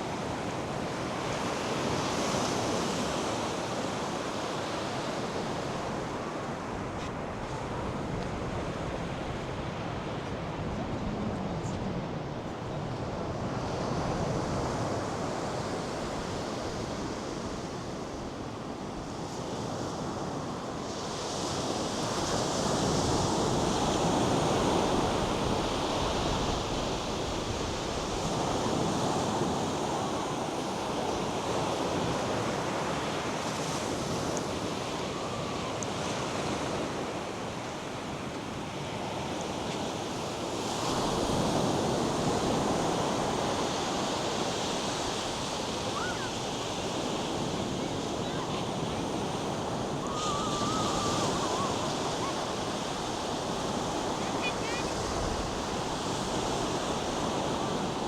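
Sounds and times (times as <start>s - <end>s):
surf breaking on beach: 20.9s - 58.0s.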